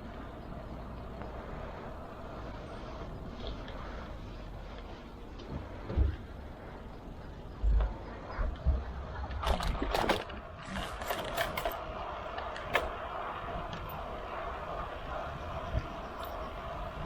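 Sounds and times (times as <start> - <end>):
bike tyres rolling: 0.0 - 17.0
bike and mount clicking: 8.5 - 14.1.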